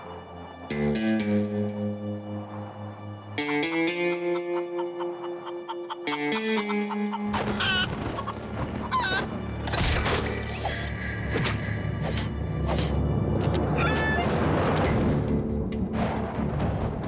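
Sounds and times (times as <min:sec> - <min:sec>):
dramatic background music: 0:00.0 - 0:17.0
warbling chirp-like calls: 0:03.4 - 0:09.2.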